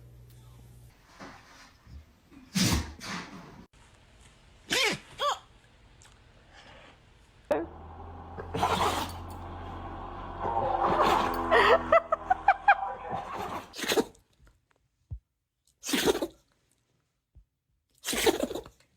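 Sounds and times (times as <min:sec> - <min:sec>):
background music: 0:07.6 - 0:13.7.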